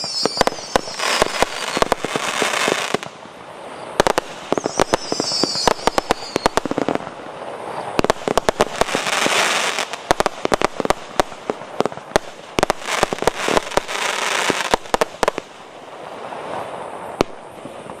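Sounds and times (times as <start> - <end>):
firework crackling: 0.0 - 18.0
firework shells bursting: 4.0 - 7.0.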